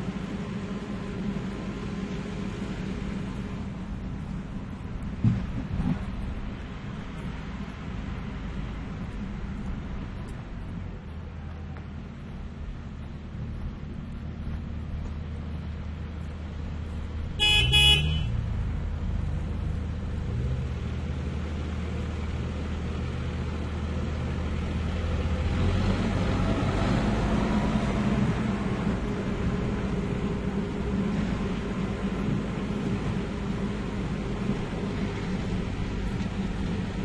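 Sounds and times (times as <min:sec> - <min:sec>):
tractor engine running: 0:00.0 - 0:37.0
horn toot: 0:17.4 - 0:18.4.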